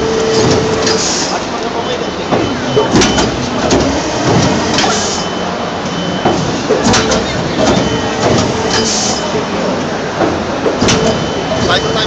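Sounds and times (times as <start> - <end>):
air hissing: 0.0 - 1.5, 3.2 - 5.3, 6.5 - 9.4
machine mechanism knocking: 0.0 - 5.3, 5.9 - 12.0
machine whine: 0.0 - 12.0.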